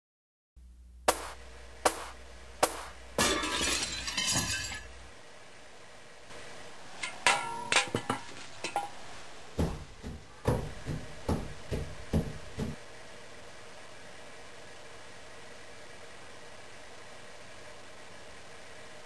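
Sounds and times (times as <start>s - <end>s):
sharp knocks: 1.1s - 3.0s, 9.6s - 12.8s
glass shattering: 3.2s - 4.9s.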